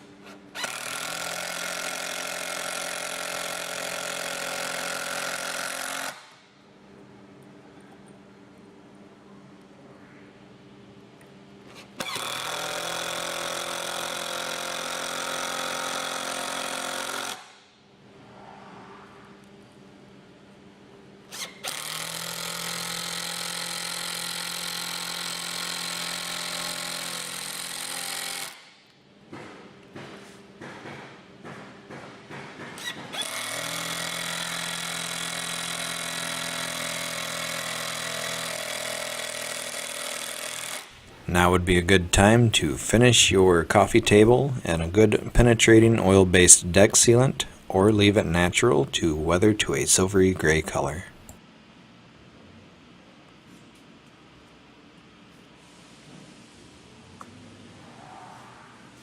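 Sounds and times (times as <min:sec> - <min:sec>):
power drill driving a screw: 0:00.6 - 0:06.3, 0:12.0 - 0:17.5, 0:21.3 - 0:28.7, 0:32.8 - 0:41.0.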